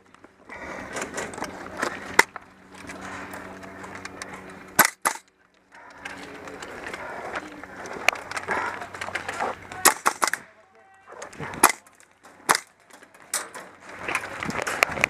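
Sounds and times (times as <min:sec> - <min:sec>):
airsoft gun shots: 0:04.8 - 0:05.2, 0:09.8 - 0:10.4, 0:11.6 - 0:11.8, 0:12.5 - 0:12.7
background rustle: 0:05.5 - 0:09.8, 0:10.4 - 0:15.0.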